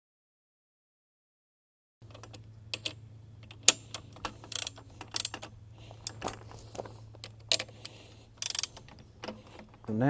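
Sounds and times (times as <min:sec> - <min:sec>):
metallic tool clicks and clanks: 0:02.1 - 0:06.4, 0:07.2 - 0:09.9.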